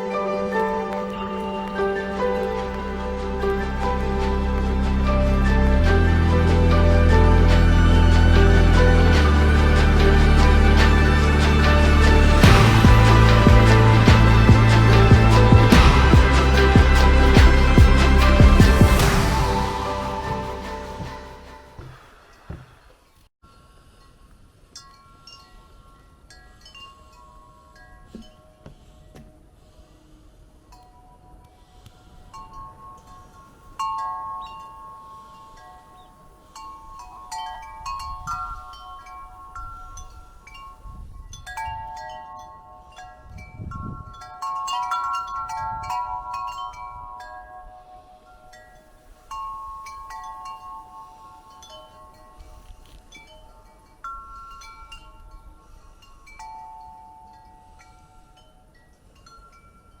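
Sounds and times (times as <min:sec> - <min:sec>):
low wind rumbles: 0:00.0 - 0:22.8, 0:36.6 - 0:47.3
wind chimes ringing: 0:00.0 - 0:22.8, 0:23.5 - 0:29.5, 0:30.7 - 1:00.0.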